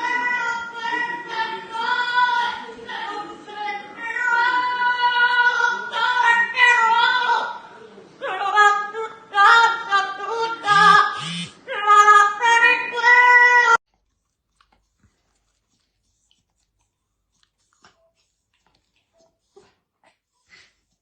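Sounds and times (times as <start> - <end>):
high-pitched voice singing: 10.7 - 11.5.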